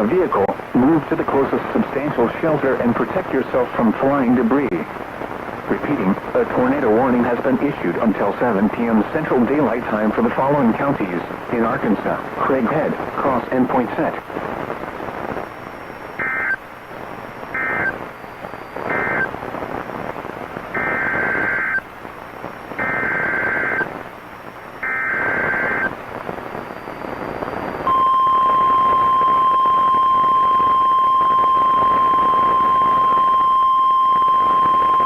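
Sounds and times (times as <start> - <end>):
radio hiss: 0.0 - 35.0
buzzing data bursts: 15.3 - 19.8, 20.7 - 21.9, 22.6 - 35.0
steady alarm tone: 16.2 - 16.6, 17.5 - 18.0, 18.9 - 19.3, 20.8 - 21.8, 22.8 - 23.8, 24.8 - 25.9, 27.9 - 35.0.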